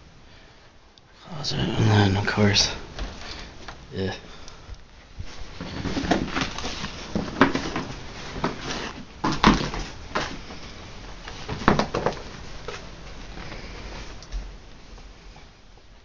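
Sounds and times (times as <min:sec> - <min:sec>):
knocking and scraping in debris: 0:05.6 - 0:10.4.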